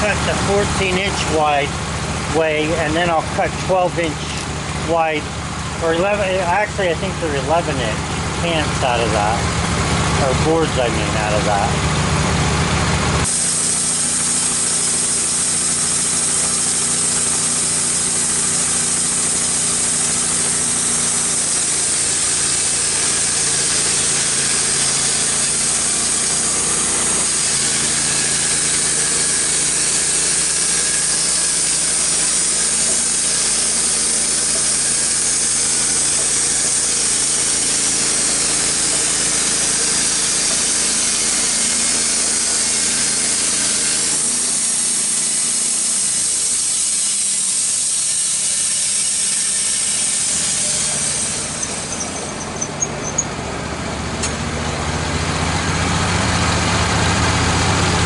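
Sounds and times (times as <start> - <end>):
sawmill engine under load: 0.0 - 58.0
band blade cutting log: 13.2 - 45.9, 48.8 - 53.2.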